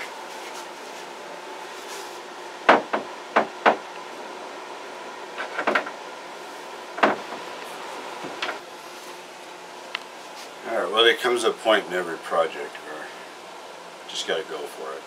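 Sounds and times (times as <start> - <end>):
knocks on wood: 2.7 - 3.8, 7.0 - 7.3.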